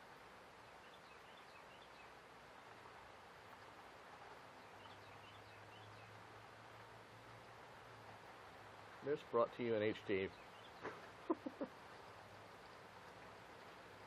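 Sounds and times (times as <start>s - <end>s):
rain hissing: 0.0s - 14.0s
bird chirping: 0.6s - 2.2s, 4.6s - 6.2s, 10.0s - 11.6s.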